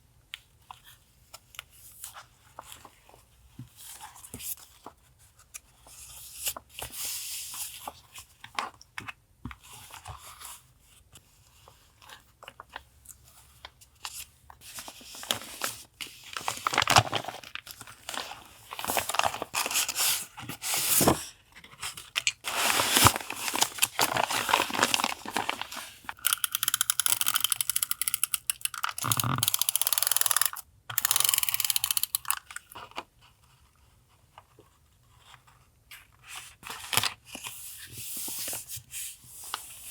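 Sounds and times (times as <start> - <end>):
paper rustling and tearing: 22.4 - 26.2.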